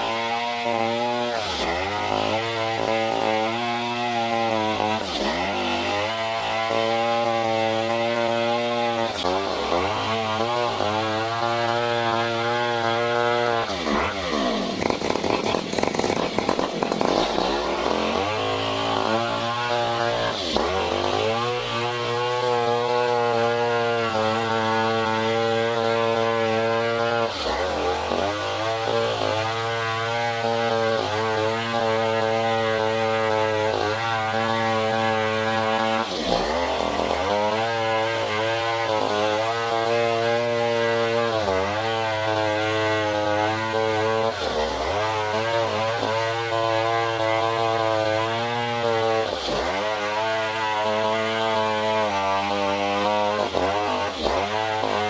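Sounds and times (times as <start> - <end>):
chainsaw running at high revs: 0.0 - 55.0.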